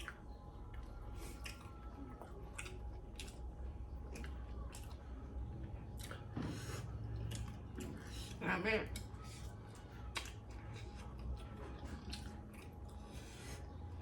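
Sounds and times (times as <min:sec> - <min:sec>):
person chewing: 0:00.0 - 0:05.3, 0:05.9 - 0:14.0
low steady hum: 0:00.0 - 0:14.0
wet mouth clicks and squishes: 0:01.4 - 0:03.5, 0:04.1 - 0:05.0, 0:07.2 - 0:08.0, 0:10.0 - 0:10.5, 0:12.0 - 0:12.8.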